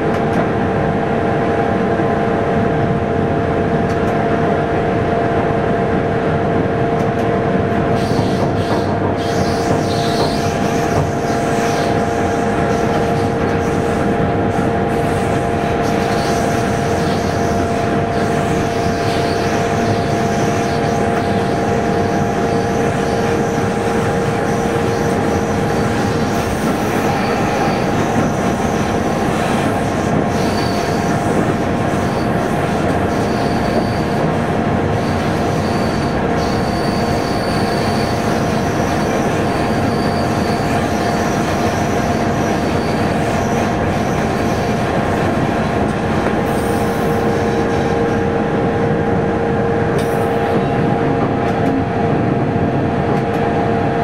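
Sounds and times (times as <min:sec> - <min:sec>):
train cab drone: 0:00.0 - 0:54.0
high-pitched squeals: 0:08.0 - 0:45.2.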